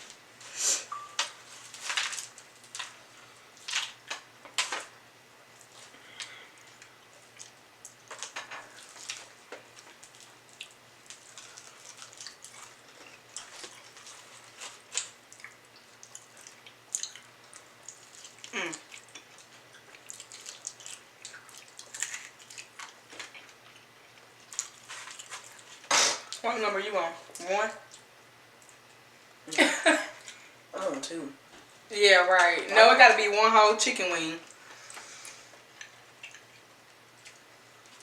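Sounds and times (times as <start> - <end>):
crunching on fried chicken: 1.4 - 4.9, 5.6 - 26.4.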